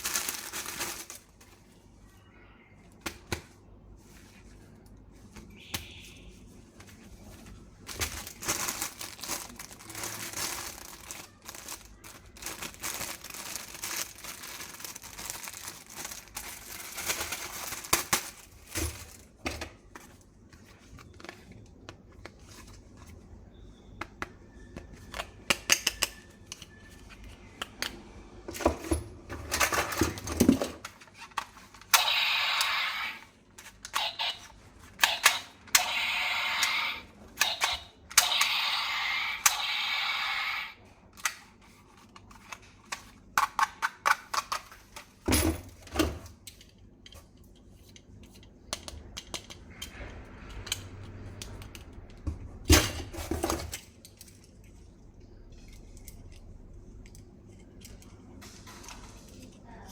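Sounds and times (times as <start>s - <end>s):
plastic packaging crinkling: 0.0s - 1.8s, 7.2s - 19.4s
plastic toy parts clicking: 31.3s - 38.6s, 42.3s - 45.0s.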